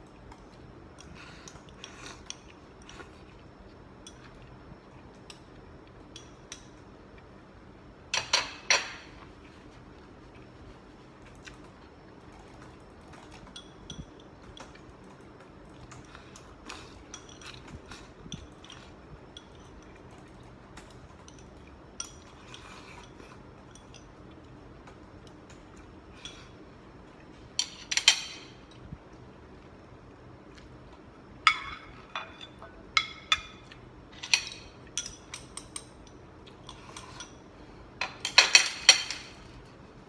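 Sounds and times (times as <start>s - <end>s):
utensils clinking against dish: 8.2s - 9.2s, 31.5s - 37.4s, 38.0s - 39.6s.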